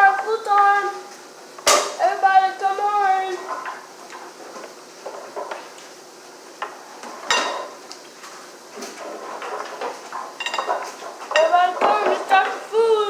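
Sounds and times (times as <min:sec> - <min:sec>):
dishes and cutlery clinking: 0:06.6 - 0:07.8, 0:08.8 - 0:12.8.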